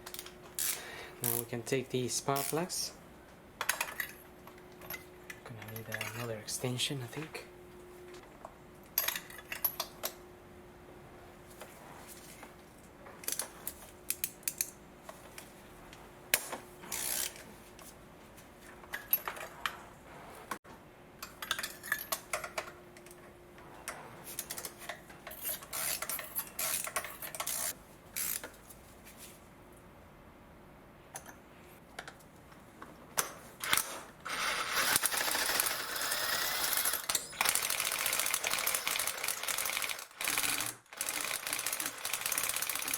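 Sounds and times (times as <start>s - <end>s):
socket ratchet clicking rapidly: 34.9s - 42.9s.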